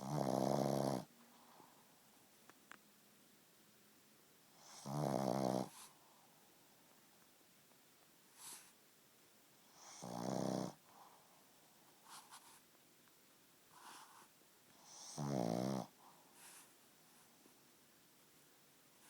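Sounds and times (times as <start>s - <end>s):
dog snoring: 0.0s - 1.1s, 4.5s - 5.9s, 9.6s - 11.0s, 13.8s - 16.6s
soft breath sounds: 1.1s - 2.3s, 5.6s - 7.1s, 8.3s - 8.8s, 10.7s - 12.8s, 13.7s - 15.2s, 15.8s - 17.7s.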